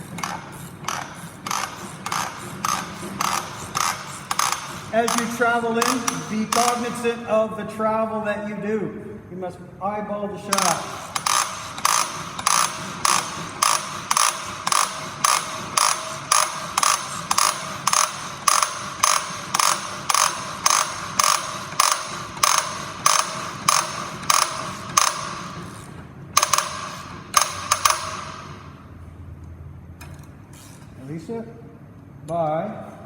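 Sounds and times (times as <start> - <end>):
ratchet wrench clicking: 0.2 - 7.0, 10.5 - 28.7.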